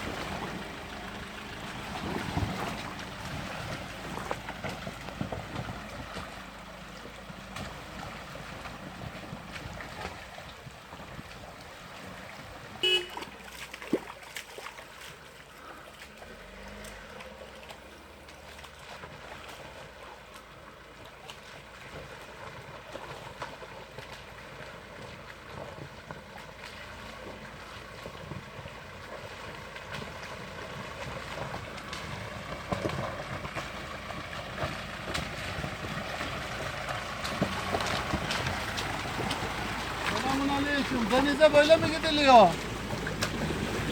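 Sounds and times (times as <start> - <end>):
suv engine and tyre noise: 0.0 - 43.9.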